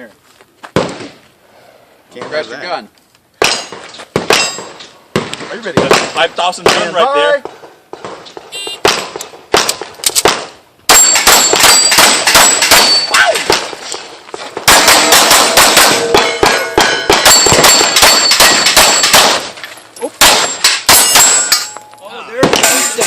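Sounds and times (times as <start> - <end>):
pistol shots: 8.0 - 13.8, 14.6 - 19.6, 20.2 - 21.7
steel plates pinging: 14.8 - 23.0.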